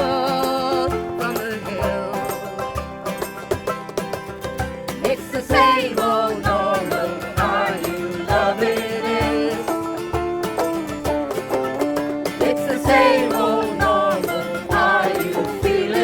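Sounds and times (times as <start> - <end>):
instrumental music with beat: 0.0 - 16.0
wavering melody line: 5.4 - 9.6.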